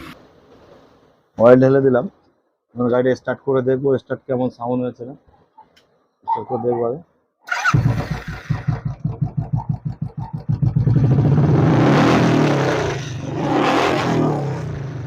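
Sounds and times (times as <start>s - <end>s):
motorcycle engine idling and revving: 7.5s - 15.0s.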